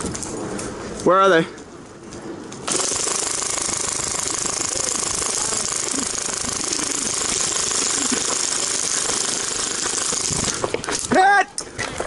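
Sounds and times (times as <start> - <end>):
airsoft minigun rattling: 2.6 - 11.1.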